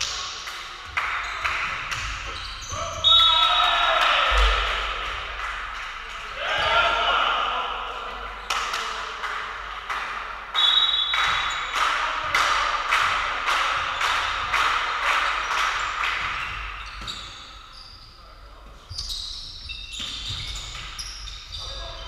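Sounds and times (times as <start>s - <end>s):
sharp rhythmic claps echoing: 0.0s - 17.6s.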